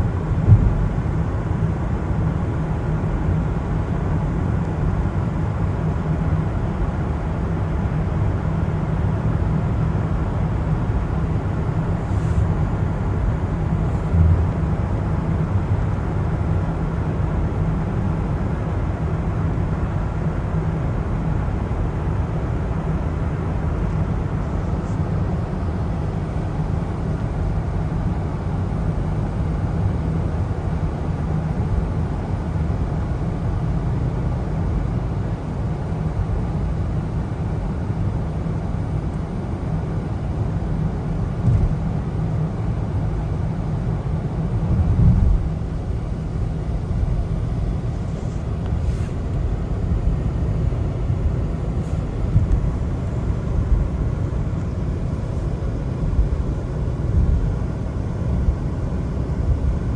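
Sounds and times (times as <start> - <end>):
low road rumble: 0.0 - 5.6, 9.0 - 18.3, 38.6 - 59.9.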